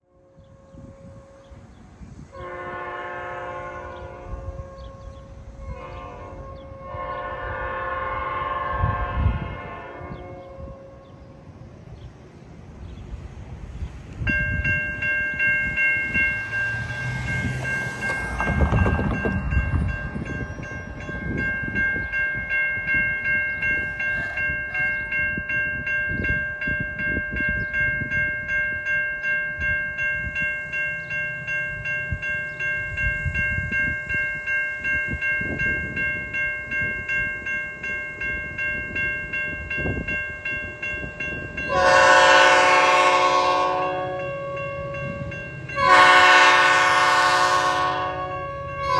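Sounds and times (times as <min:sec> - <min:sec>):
train horn: 0:00.0 - 0:11.5, 0:41.6 - 0:48.9
crossing warning bell ringing: 0:02.4 - 0:11.8, 0:13.8 - 0:48.9.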